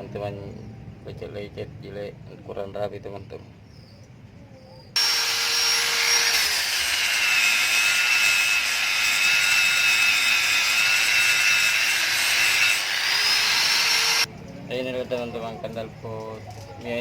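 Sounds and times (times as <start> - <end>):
power sander whining on metal: 5.0 - 14.3.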